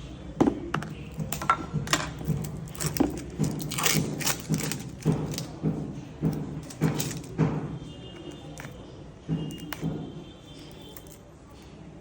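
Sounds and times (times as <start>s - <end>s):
plastic packaging crinkling: 2.0s - 5.6s.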